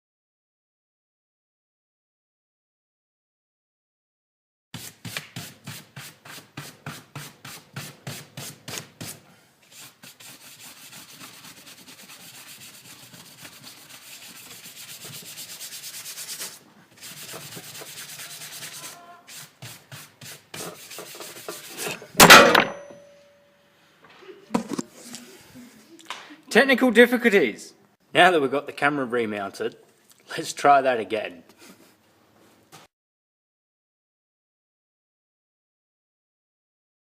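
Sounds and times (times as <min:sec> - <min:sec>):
scrubbing strokes on workbench: 0:04.8 - 0:22.1
metallic clang: 0:21.8 - 0:23.5.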